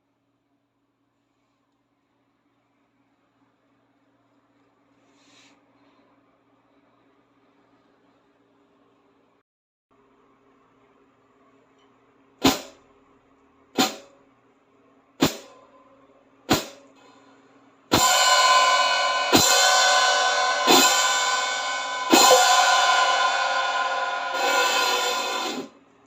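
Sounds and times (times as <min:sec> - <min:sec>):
hi-hat cymbals struck: 0:17.9 - 0:25.8.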